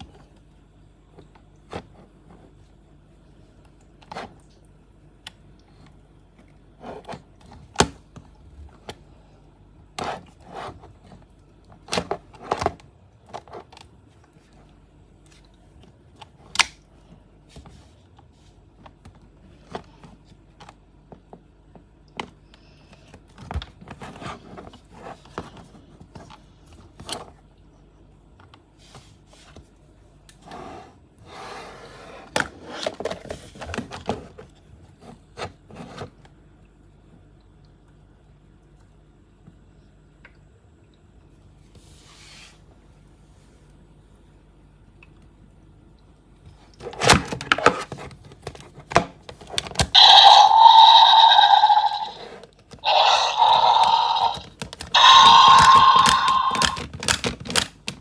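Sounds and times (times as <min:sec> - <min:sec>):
plastic toy clicks and taps: 0:52.9 - 0:58.0.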